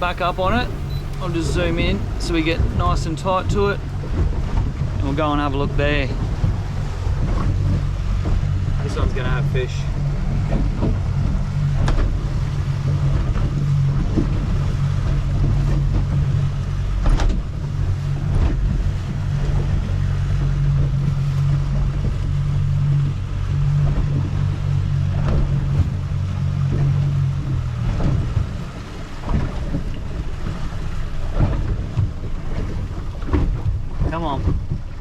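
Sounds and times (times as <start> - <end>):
boat motor humming: 0.0 - 35.0
knocks from the hull: 10.4 - 16.2, 17.0 - 17.6, 26.7 - 28.6, 29.2 - 35.0.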